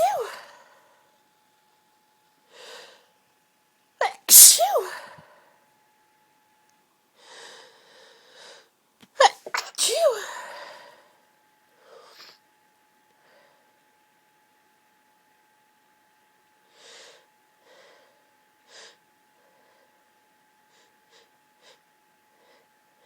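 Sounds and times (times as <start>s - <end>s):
woman sneezing: 0.0s - 0.6s, 4.0s - 5.3s, 9.2s - 10.7s.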